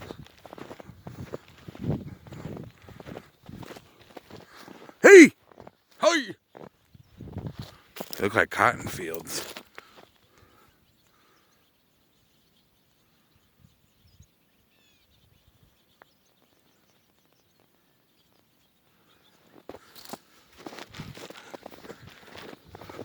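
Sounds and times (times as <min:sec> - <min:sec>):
footsteps crunching in snow: 0:00.0 - 0:05.7, 0:19.6 - 0:23.0
small birds chirping: 0:09.4 - 0:20.4.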